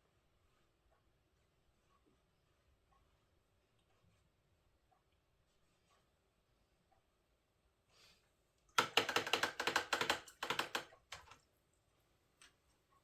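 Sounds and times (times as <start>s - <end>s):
clatter of hard clicks: 8.8s - 11.4s.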